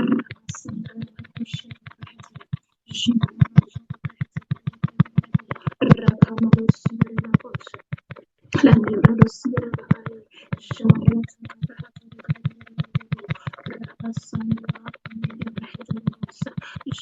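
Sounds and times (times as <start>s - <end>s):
voice stuttering choppy audio: 0.0s - 17.0s.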